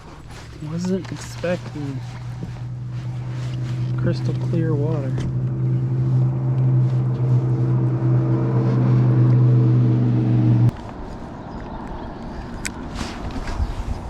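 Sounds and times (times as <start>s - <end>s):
motor hum: 0.0s - 10.7s.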